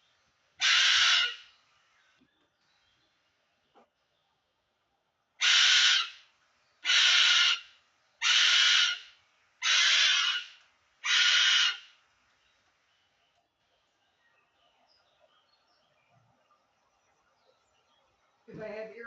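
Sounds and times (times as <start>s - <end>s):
bird screaming: 0.6s - 1.5s, 5.4s - 6.2s, 6.8s - 12.0s.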